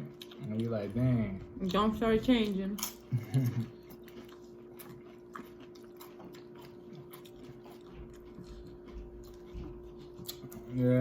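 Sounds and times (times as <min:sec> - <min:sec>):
faint steady hum: 0:00.0 - 0:11.0
crunchy chips being chewed: 0:02.4 - 0:11.0.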